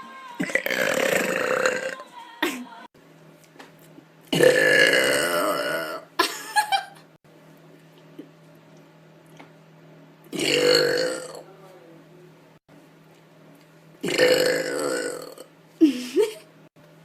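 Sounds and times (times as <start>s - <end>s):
woman burping: 0.4s - 2.6s, 4.4s - 6.1s, 10.4s - 11.4s, 14.0s - 16.4s.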